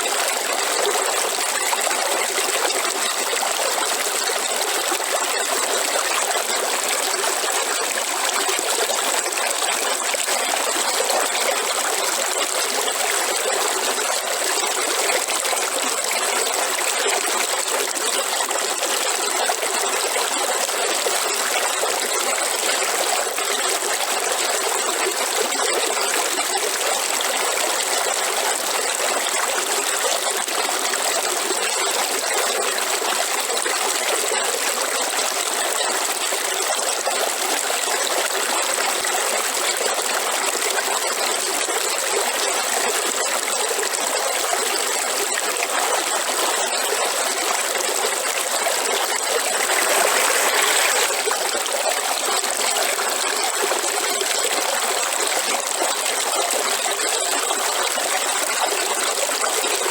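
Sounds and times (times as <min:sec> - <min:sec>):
river flowing over rocks: 0:44.4 - 0:59.9.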